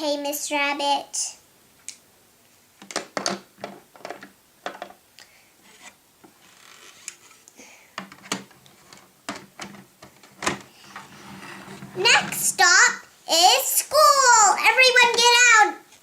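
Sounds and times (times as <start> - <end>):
plastic toys knocking on hard surface: 2.8 - 5.0
toys rubbing and scraping: 10.8 - 13.0.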